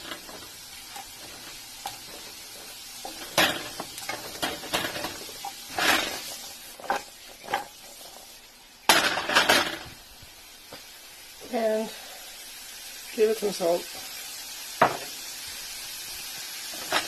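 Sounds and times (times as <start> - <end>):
stirring against pan: 0.0 - 8.5
vegetables sizzling in hot oil: 0.0 - 17.0.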